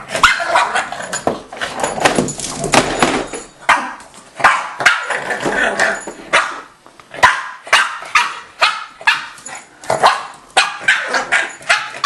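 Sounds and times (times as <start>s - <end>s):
dog barking: 3.7s - 5.1s, 6.3s - 9.4s, 10.0s - 12.0s.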